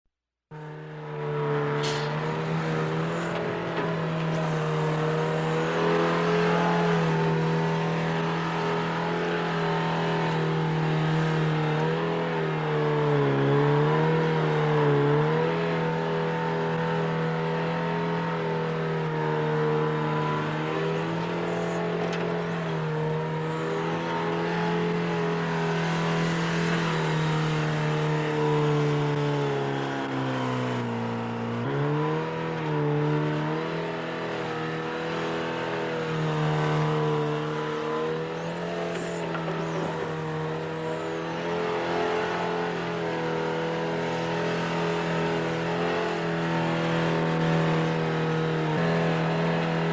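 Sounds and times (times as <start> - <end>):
backhoe engine running: 0.6 - 6.0.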